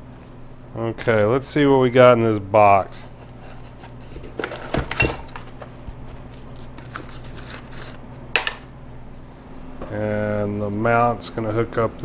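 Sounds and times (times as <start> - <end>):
metal parts clinking: 4.4 - 5.8.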